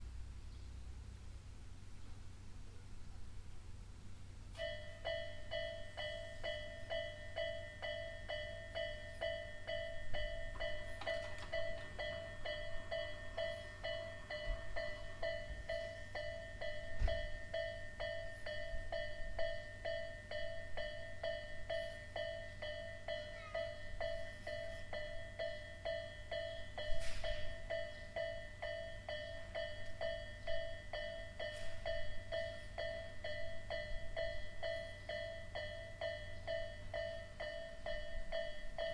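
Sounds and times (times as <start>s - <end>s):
level crossing alarm dinging: 4.6s - 38.9s.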